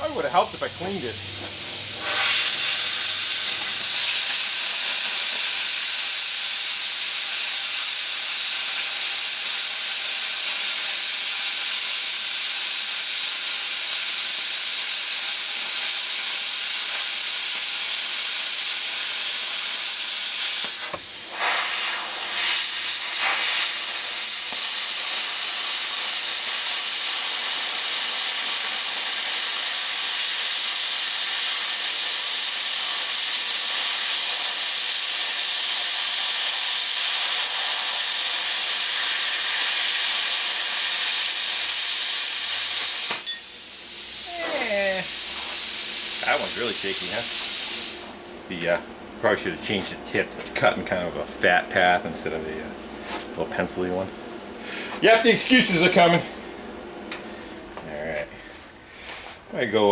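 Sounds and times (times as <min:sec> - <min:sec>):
cutting torch hissing: 0:00.0 - 0:48.2.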